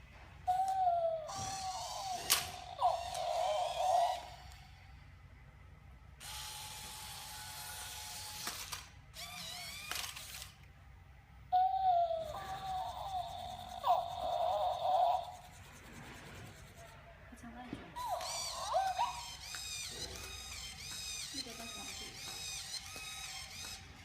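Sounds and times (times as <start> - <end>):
robot toy electronic chirps: 0.5 - 4.4, 18.0 - 24.0
small wheel motors whirring: 0.5 - 4.6, 6.2 - 10.6, 11.7 - 16.9, 18.0 - 24.0.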